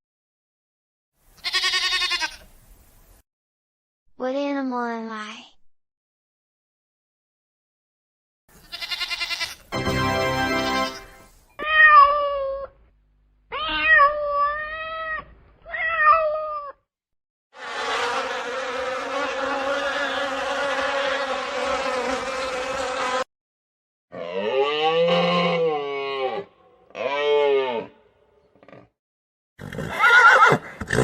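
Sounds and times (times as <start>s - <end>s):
animal calls: 17.6s - 23.2s.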